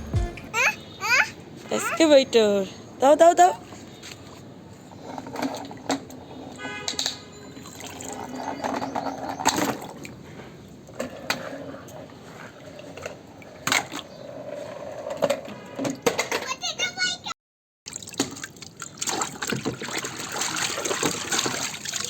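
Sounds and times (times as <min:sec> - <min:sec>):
water splashing and running: 0:17.9 - 0:22.0.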